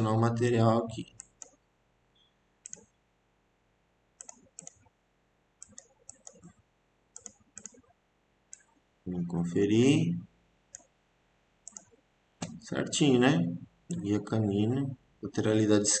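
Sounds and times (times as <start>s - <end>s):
computer mouse clicking: 1.1s - 1.6s, 2.6s - 3.0s, 4.2s - 5.0s, 5.6s - 8.8s, 10.7s - 10.9s, 11.6s - 12.6s.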